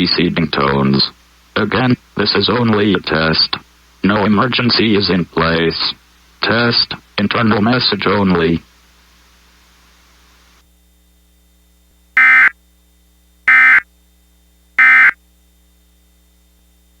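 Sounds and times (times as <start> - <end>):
faint hiss: 0.0 - 10.7
digital data tone bursts: 12.2 - 12.5, 13.5 - 13.8, 14.8 - 15.2.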